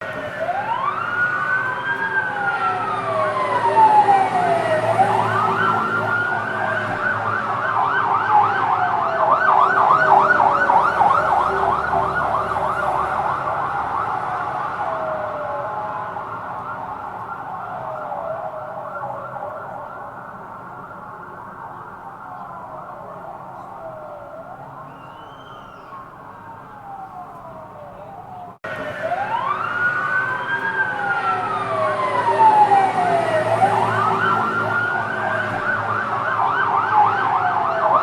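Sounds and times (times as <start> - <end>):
fire truck siren wailing: 0.0 - 38.0.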